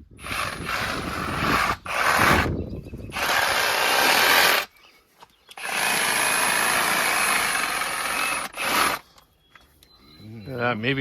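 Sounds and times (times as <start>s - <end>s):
reciprocating saw cutting: 0.2s - 2.5s, 3.1s - 4.7s, 5.6s - 9.0s.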